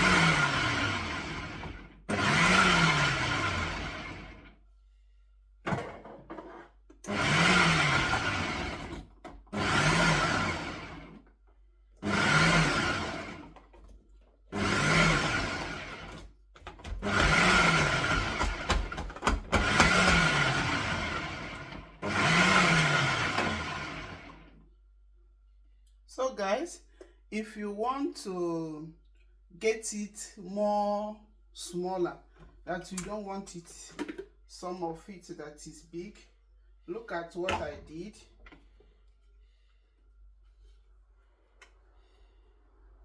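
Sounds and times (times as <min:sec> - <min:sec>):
food processor motor pulsing: 0:00.0 - 0:04.5, 0:07.0 - 0:11.2, 0:12.0 - 0:13.8, 0:14.5 - 0:24.6.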